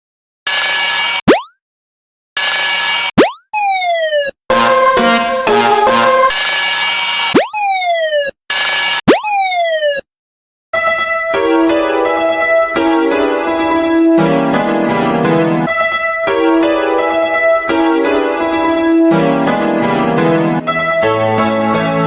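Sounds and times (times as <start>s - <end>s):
electronic keyboard music: 3.2s - 7.8s, 10.8s - 22.0s.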